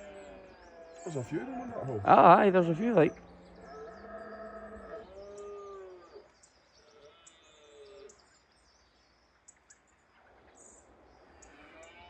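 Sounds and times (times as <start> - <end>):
faint deer stags roaring: 0.0 - 6.2
small birds chirping: 0.0 - 12.0.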